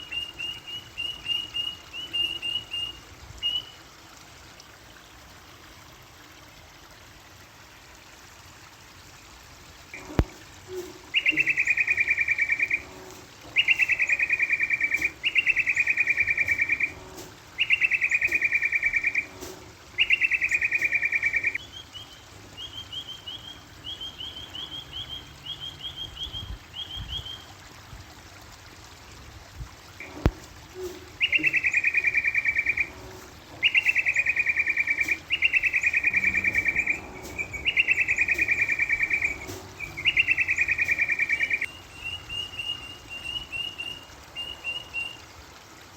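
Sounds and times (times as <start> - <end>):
bird rattling call: 10.4 - 21.6, 30.0 - 45.1
short high bird chirps: 10.7 - 17.0, 17.6 - 27.4, 30.8 - 45.2.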